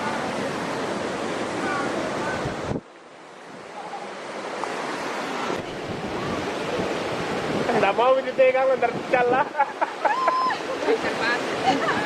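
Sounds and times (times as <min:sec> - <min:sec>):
waterfall roaring: 0:00.0 - 0:12.0
wind on microphone: 0:01.6 - 0:02.9, 0:04.9 - 0:08.0, 0:08.8 - 0:09.6.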